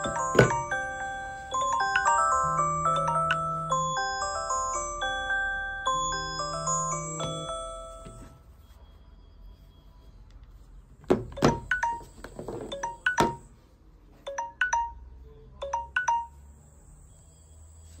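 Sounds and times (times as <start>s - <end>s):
phone alarm tone ringing: 0.0s - 8.4s, 11.4s - 13.5s.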